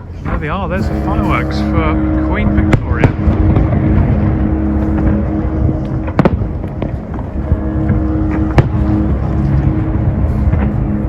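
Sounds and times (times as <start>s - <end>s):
low rumble and hum: 0.0s - 11.0s
fireworks bangs: 2.5s - 10.8s.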